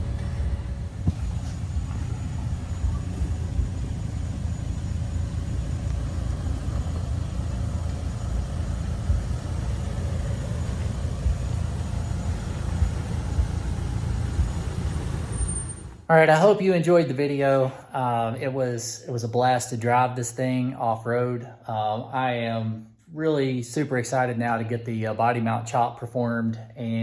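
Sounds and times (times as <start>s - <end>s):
low engine rumble: 0.0s - 17.6s.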